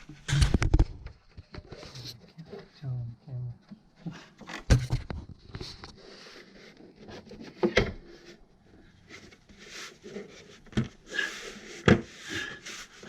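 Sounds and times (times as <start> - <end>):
scraping and rubbing: 0.0 - 2.7, 9.0 - 13.0.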